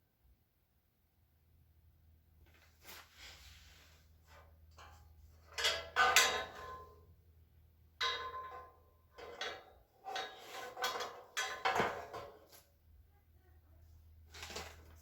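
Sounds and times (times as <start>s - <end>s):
metal shelving parts clanking: 4.3s - 7.0s, 8.0s - 12.6s.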